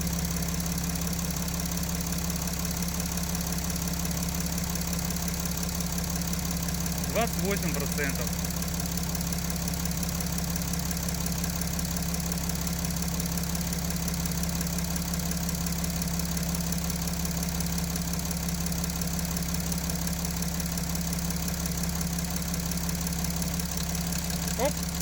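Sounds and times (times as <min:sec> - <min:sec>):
diesel engine idling: 0:00.0 - 0:25.0.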